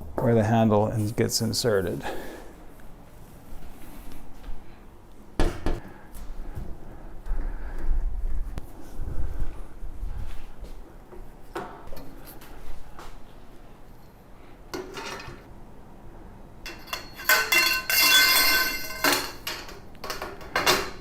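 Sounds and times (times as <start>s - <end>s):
metal parts clanking: 16.7s - 21.0s.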